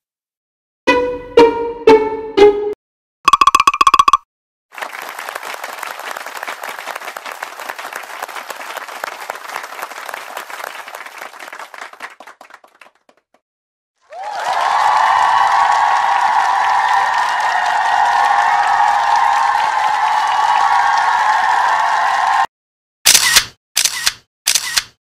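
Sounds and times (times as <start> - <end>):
rapid pitched clicks: 3.3 - 4.2
crowd applause: 4.7 - 13.4, 14.0 - 22.5.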